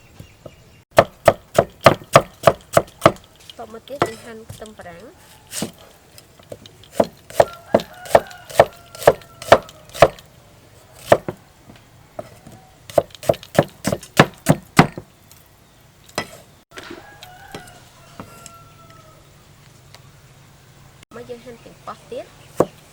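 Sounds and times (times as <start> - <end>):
knife chopping on wooden board: 0.9 - 3.3, 4.0 - 4.6, 5.5 - 5.8, 6.9 - 10.2, 11.0 - 11.4, 12.9 - 15.1, 22.6 - 22.8.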